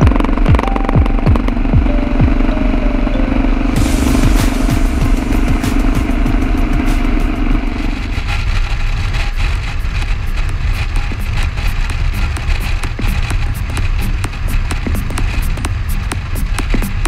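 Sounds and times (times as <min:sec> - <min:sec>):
engine hum: 0:00.0 - 0:17.0
motorcycle engine running: 0:00.0 - 0:17.0
wind noise on microphone: 0:03.8 - 0:17.0.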